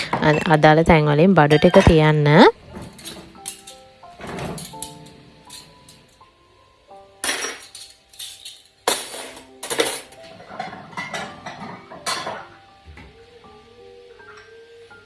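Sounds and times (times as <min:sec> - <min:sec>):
dishes and cutlery clattering: 0:00.0 - 0:00.6, 0:01.4 - 0:06.2, 0:07.2 - 0:12.6
soft background music: 0:00.0 - 0:15.0.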